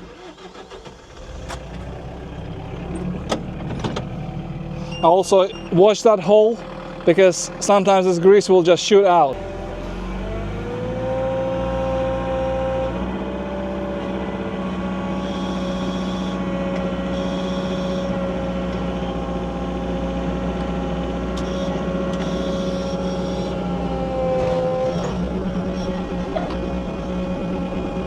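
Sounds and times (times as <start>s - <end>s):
excavator diesel engine running: 0.0s - 28.0s
steady whine: 15.2s - 28.0s.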